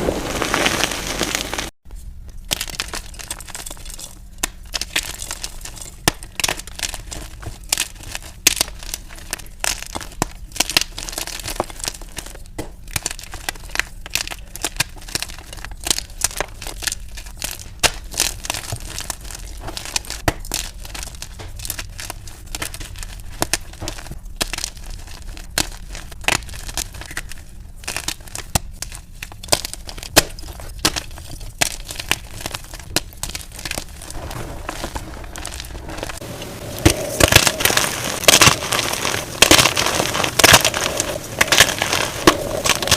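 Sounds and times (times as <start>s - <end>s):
chalk blocks being crushed: 2.4s - 42.9s.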